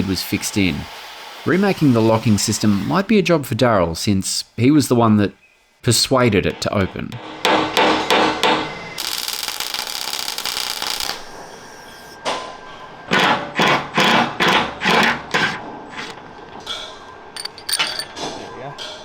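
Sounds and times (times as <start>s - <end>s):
steady hiss: 0.0s - 13.0s
hammer striking steel: 6.5s - 9.8s, 13.1s - 15.8s.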